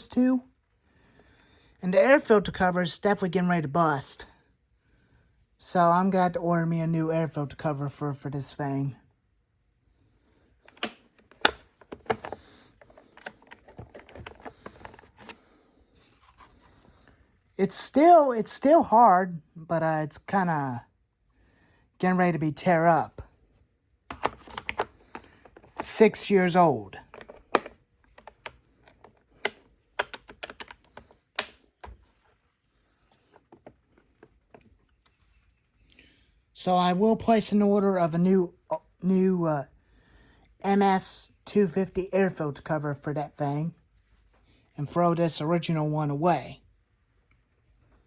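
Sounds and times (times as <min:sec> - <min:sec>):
sharp clicks and knocks of plastic cover: 0:10.7 - 0:15.4, 0:27.0 - 0:32.1.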